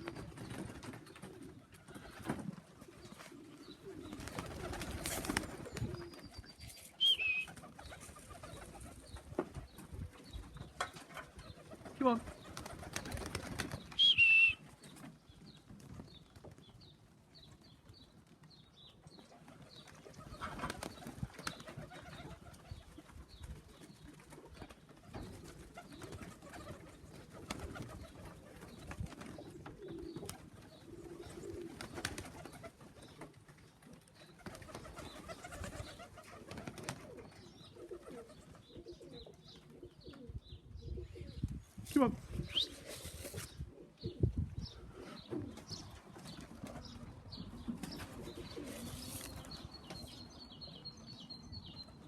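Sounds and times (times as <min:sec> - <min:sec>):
pigeons cooing: 0:00.0 - 0:14.4, 0:24.3 - 0:33.2, 0:34.0 - 0:41.6, 0:42.3 - 0:50.1.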